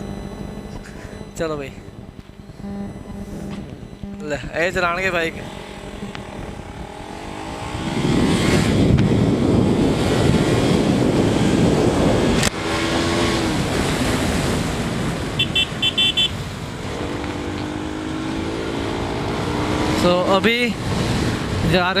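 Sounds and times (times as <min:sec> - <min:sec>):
motorcycle engine: 0:00.0 - 0:21.7
wind noise: 0:00.6 - 0:17.6, 0:20.7 - 0:22.0
short high horn toots: 0:02.6 - 0:04.5, 0:15.4 - 0:16.4.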